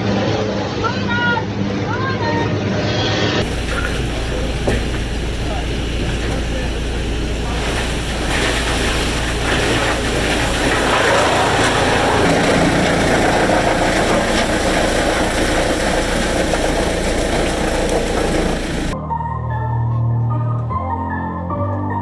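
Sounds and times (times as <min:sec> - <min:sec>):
engine drone: 0:03.4 - 0:19.0
loud noisy machinery rush: 0:03.4 - 0:19.0.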